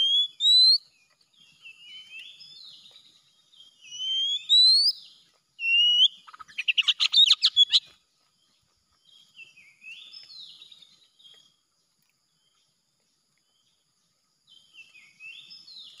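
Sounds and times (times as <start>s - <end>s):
bird singing: 0.0s - 16.0s.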